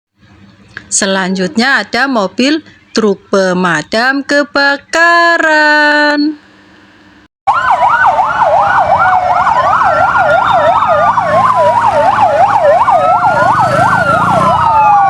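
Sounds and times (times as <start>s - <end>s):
siren fast yelp: 7.5s - 15.0s
siren slow wail: 7.5s - 15.0s.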